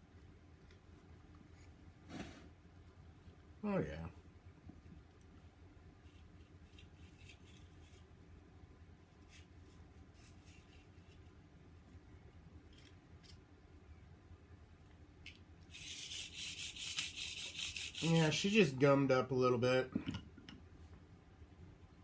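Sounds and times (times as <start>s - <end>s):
scratchy rubbing on parts: 6.0s - 8.2s, 9.2s - 11.4s, 15.7s - 18.8s.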